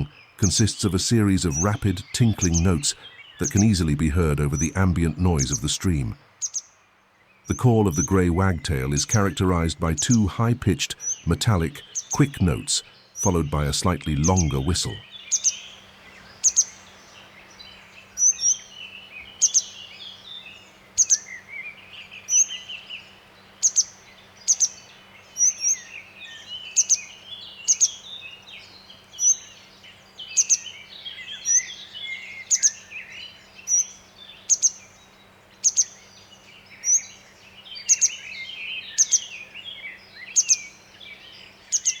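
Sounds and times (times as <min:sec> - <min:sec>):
soft low twittering: 0:00.0 - 0:06.2
wagtail metallic call notes: 0:00.0 - 0:06.2, 0:07.5 - 0:15.0.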